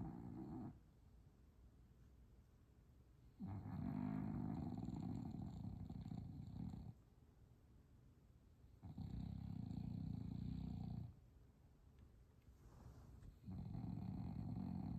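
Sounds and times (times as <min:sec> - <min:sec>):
dog snoring: 0:00.0 - 0:00.8, 0:03.4 - 0:07.0, 0:08.8 - 0:11.2, 0:12.8 - 0:14.9.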